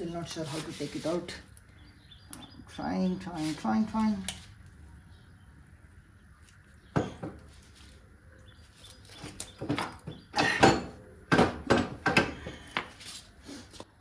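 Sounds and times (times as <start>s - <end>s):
knocks and clunks of engine parts: 6.9s - 7.5s, 9.2s - 12.9s.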